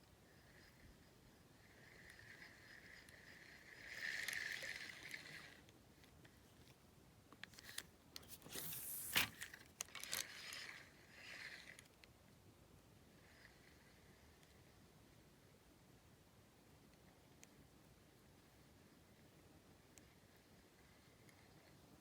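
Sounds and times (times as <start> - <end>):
crinkling scraping and clicking: 2.0 - 12.1.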